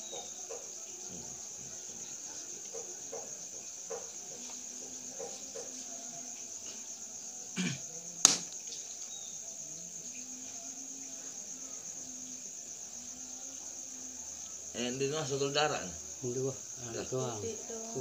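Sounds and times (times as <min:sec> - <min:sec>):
crickets chirring: 0:00.0 - 0:18.0
dull knock: 0:02.7 - 0:04.4
sharp click: 0:08.2 - 0:08.6.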